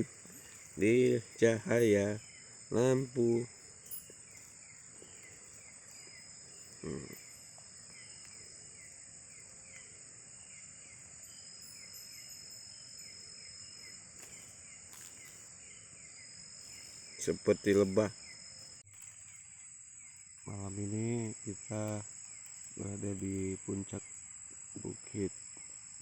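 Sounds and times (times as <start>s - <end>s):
insects trilling: 0.0s - 26.0s.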